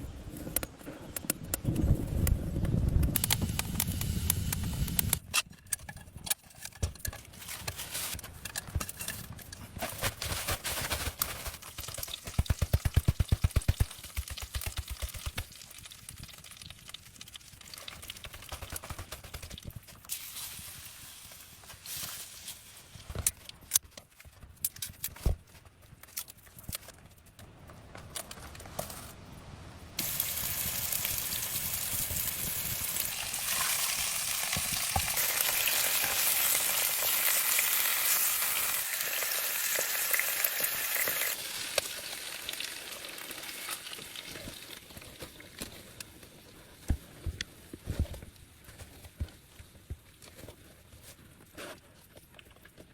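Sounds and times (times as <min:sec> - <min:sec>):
steady sizzling hiss: 0:01.8 - 0:05.2, 0:29.3 - 0:45.3.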